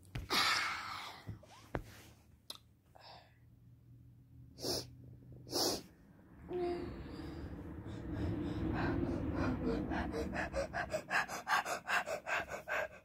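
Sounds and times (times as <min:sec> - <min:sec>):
gasping breath: 0:06.5 - 0:13.0.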